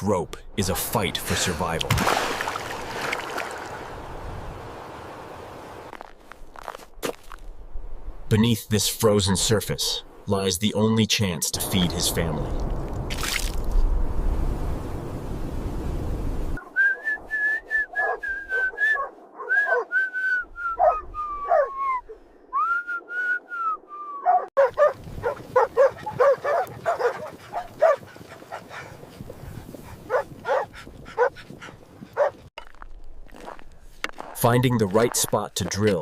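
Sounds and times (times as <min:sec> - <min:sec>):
rush of wind-like noise: 0:11.6 - 0:16.6
dog yipping and yelping: 0:20.8 - 0:21.8, 0:24.2 - 0:28.0, 0:30.1 - 0:32.4.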